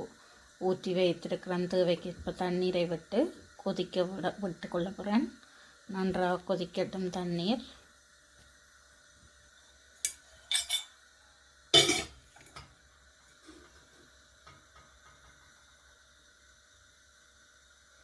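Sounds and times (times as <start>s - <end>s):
metal pots clinking and clanking: 10.0s - 11.0s, 11.8s - 12.8s.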